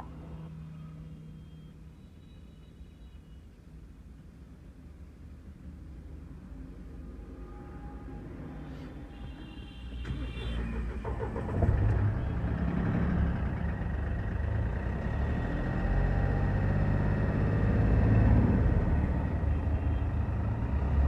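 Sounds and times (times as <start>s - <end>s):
diesel engine starting and running: 9.5s - 21.0s.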